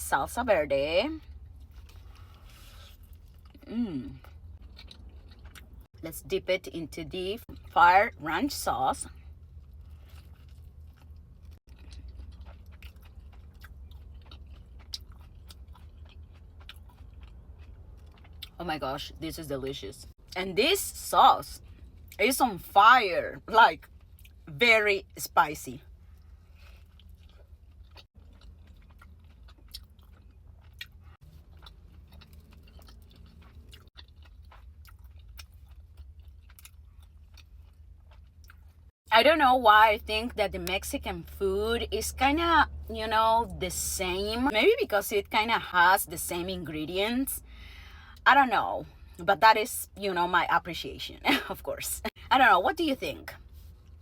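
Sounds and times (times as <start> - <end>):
crunchy chewing: 1.4 - 5.9, 9.3 - 18.6, 26.0 - 38.9.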